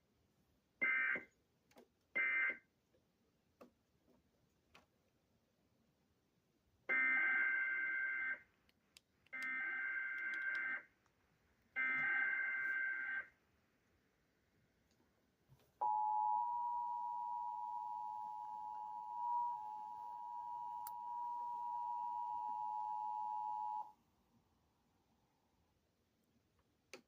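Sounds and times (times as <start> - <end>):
steady attention tone: 15.8 - 23.9.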